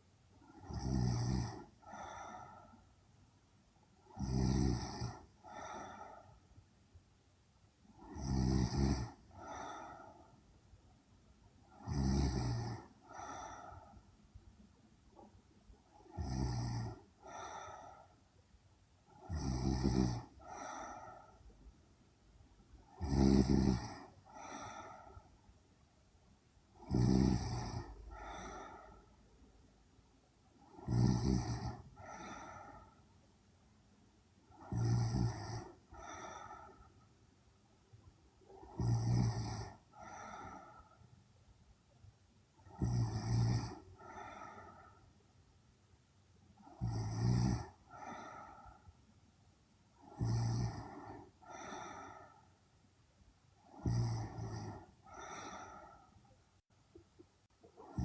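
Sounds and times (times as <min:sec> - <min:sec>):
woman snoring: 0:00.4 - 0:02.8, 0:04.0 - 0:06.3, 0:07.9 - 0:10.3, 0:11.7 - 0:14.0, 0:15.9 - 0:18.1, 0:19.1 - 0:21.4, 0:22.8 - 0:25.3, 0:26.8 - 0:29.1, 0:30.6 - 0:33.0, 0:34.4 - 0:36.9, 0:38.4 - 0:41.0, 0:42.6 - 0:45.0, 0:46.6 - 0:48.9, 0:50.0 - 0:52.5, 0:53.6 - 0:56.1, 0:57.6 - 0:58.0.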